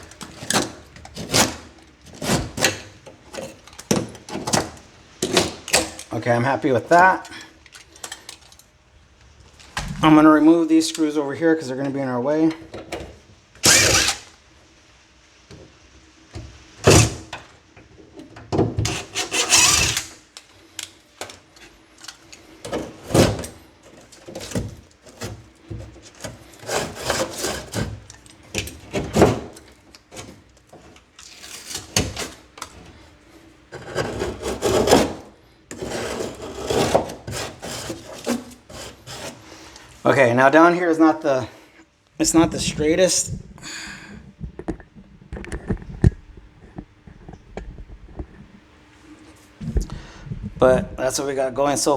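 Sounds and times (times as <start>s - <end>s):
tools scraping drywall and wood: 0.0s - 8.6s, 13.6s - 14.3s, 18.8s - 20.2s, 21.2s - 40.0s.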